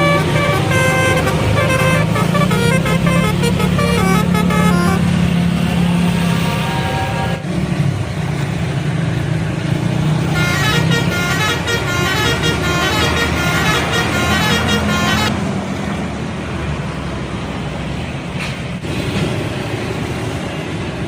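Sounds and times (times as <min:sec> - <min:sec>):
bus horn playing a tune: 0:00.0 - 0:05.8, 0:06.4 - 0:07.4, 0:10.3 - 0:15.4
bus engine running: 0:00.0 - 0:21.0.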